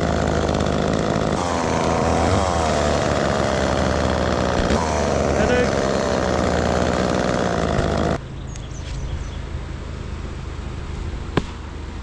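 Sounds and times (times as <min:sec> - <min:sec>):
chainsaw running: 0:00.0 - 0:08.2
engine hum: 0:00.0 - 0:12.0.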